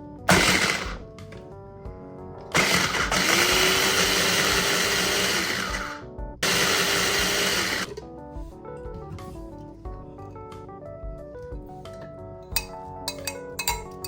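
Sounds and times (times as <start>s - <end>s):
electric blender grinding: 0.3s - 1.0s, 2.5s - 7.9s.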